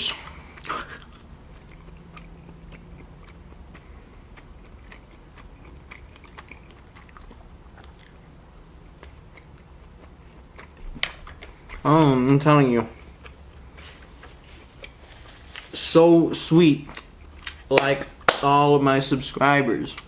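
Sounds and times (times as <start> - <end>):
person chewing with wet mouth clicks: 0.6 - 11.9.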